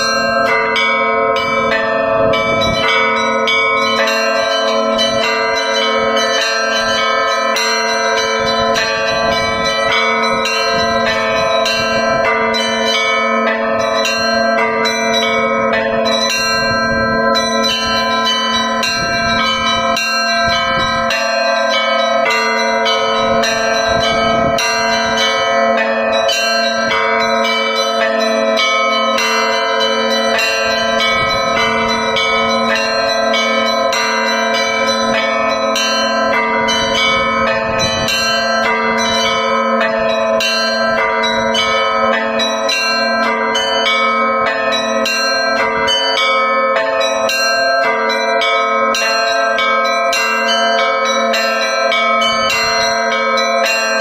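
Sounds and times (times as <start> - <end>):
large low bells humming: 0.0 - 54.0
small bells ringing rapidly: 0.0 - 54.0.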